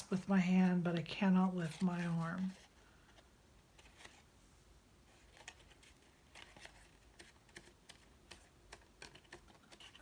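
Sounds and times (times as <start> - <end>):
paper pieces ticking and tapping: 5.3 - 10.0.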